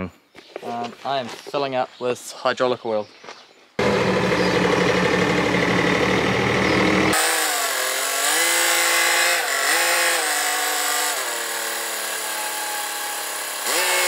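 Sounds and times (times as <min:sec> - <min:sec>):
engine running: 0:03.8 - 0:14.0.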